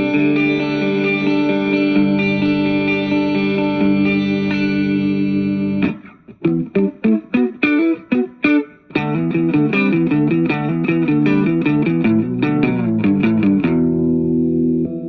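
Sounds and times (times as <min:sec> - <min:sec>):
electric guitar with pitch effect: 0:00.0 - 0:15.0.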